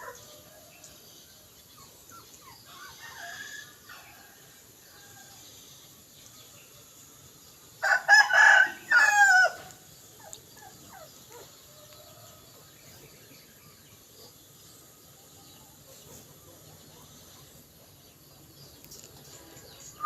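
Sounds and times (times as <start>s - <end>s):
rooster crowing: 2.7s - 4.1s, 7.8s - 9.7s.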